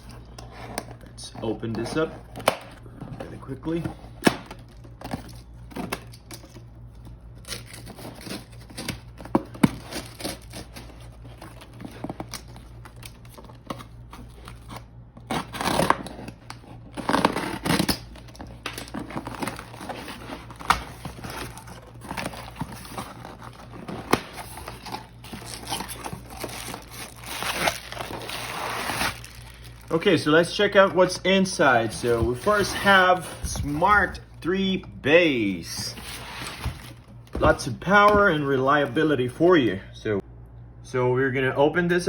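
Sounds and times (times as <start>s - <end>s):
cardboard box tearing and rustling: 7.3s - 30.0s, 31.7s - 34.2s, 35.8s - 37.5s.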